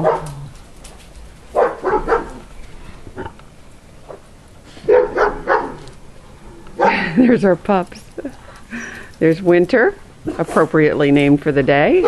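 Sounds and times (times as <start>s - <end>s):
dogs barking: 0.0s - 0.5s, 1.5s - 2.5s, 4.8s - 6.0s, 6.7s - 7.2s.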